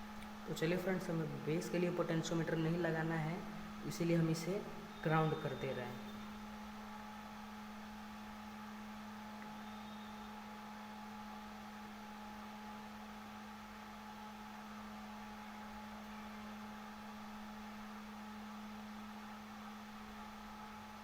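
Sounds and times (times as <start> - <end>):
faint low hum: 0.0 - 21.0
high whine: 0.0 - 21.0.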